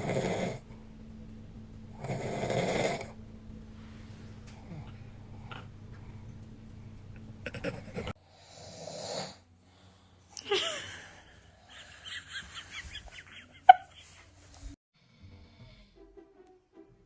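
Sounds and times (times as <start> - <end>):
man snoring: 0.0 - 0.6, 2.0 - 3.2.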